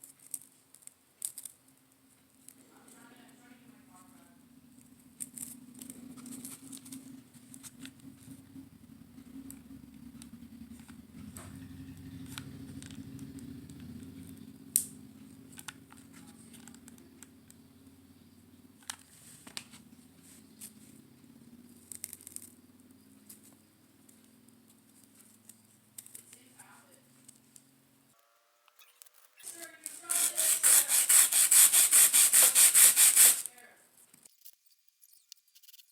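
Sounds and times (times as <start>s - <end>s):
small objects clicking and rustling: 0.0s - 3.0s, 18.8s - 19.8s, 21.8s - 22.6s, 23.2s - 26.5s
steady low hum: 1.7s - 30.1s.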